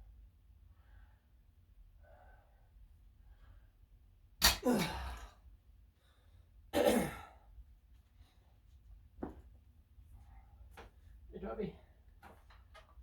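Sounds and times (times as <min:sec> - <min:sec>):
person grunting with effort: 0:04.4 - 0:05.3.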